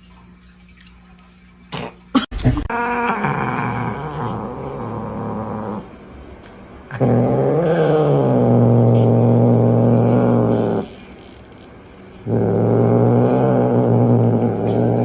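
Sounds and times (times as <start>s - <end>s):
dog drawn-out vocal sounds: 12.1s - 15.0s.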